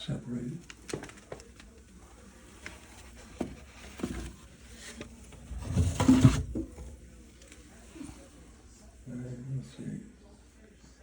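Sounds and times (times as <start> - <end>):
rustling scraping clatter: 2.8 - 7.0.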